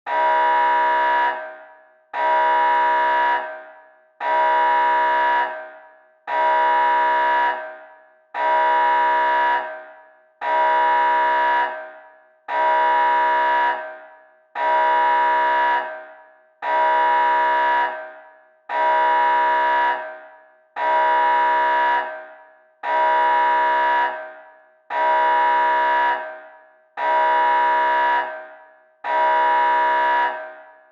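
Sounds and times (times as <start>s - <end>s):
horn-like alarm blasts: 0.1s - 30.9s.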